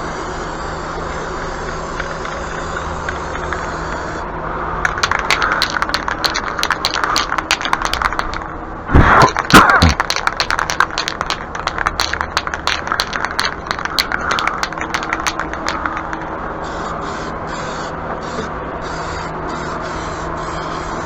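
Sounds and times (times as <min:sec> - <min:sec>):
rapid metallic rattling: 0:04.8 - 0:08.6, 0:09.2 - 0:16.5.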